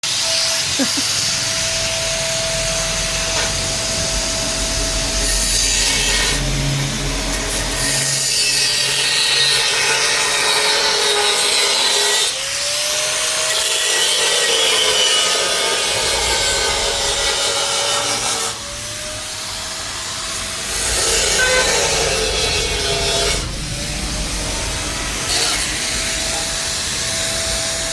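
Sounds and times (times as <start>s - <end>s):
angle grinder grinding metal: 0.0s - 27.9s.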